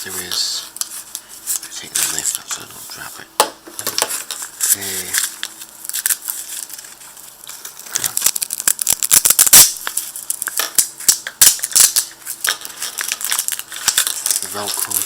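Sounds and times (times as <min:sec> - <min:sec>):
velcro strap ripping: 0:07.8 - 0:10.4.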